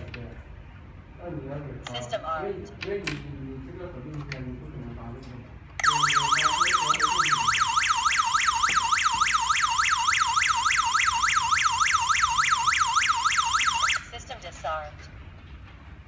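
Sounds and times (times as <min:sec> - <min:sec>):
burglar alarm siren wailing: 0:05.8 - 0:14.2.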